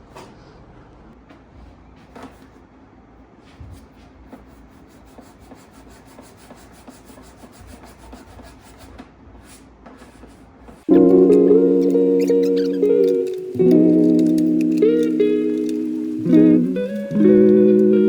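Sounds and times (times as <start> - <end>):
sandpaper rubbing: 3.5 - 17.3.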